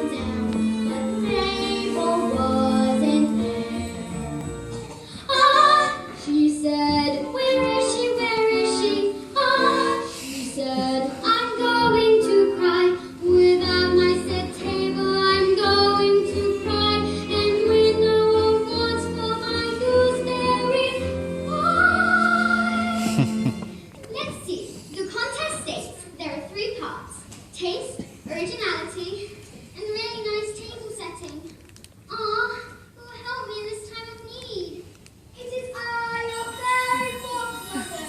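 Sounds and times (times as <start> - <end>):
young female voices singing: 0.0 - 4.0
instrumental accompaniment: 0.0 - 23.9.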